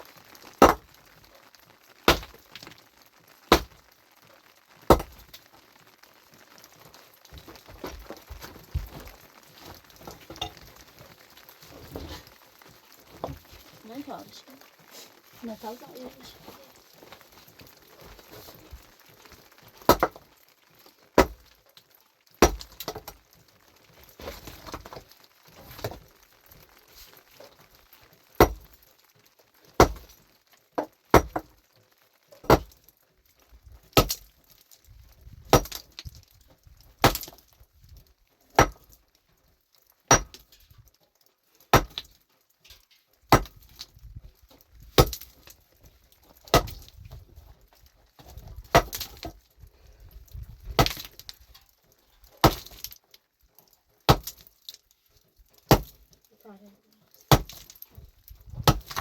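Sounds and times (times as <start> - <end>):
hand tool striking hard material: 0.6 - 0.8, 2.1 - 2.4, 3.5 - 3.8, 4.9 - 5.3, 19.8 - 20.2, 21.2 - 21.4, 22.4 - 23.2, 28.4 - 28.7, 29.8 - 30.1, 31.1 - 31.5, 32.4 - 32.8, 34.0 - 34.2, 35.5 - 35.9, 38.6 - 38.9, 40.1 - 40.5, 41.7 - 42.1, 43.3 - 43.8, 44.9 - 45.4, 46.5 - 46.9, 48.7 - 49.3, 50.8 - 51.2, 52.4 - 52.9, 54.1 - 54.4, 55.7 - 56.0, 57.3 - 57.8, 58.5 - 59.0.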